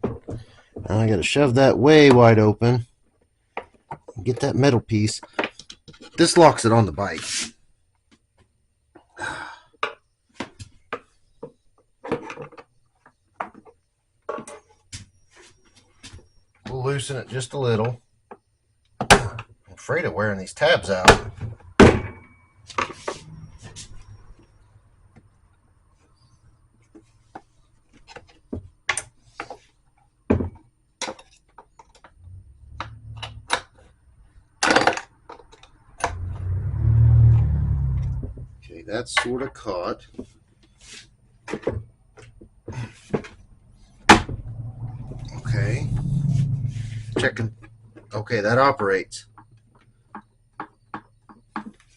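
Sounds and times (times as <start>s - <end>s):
low rumble: 36.1s - 38.6s, 44.1s - 48.0s.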